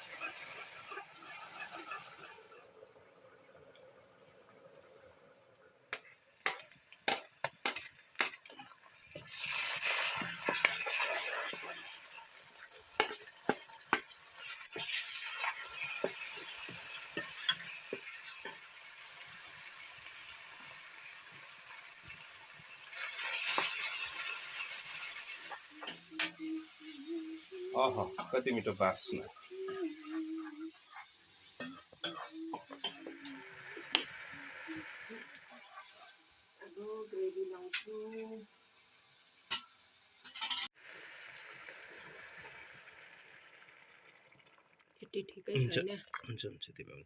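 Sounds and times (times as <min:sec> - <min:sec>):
spoon scraping pan: 0:00.0 - 0:02.6, 0:05.9 - 0:18.8, 0:29.7 - 0:34.2
food sizzling in hot oil: 0:00.0 - 0:02.8, 0:04.0 - 0:46.2.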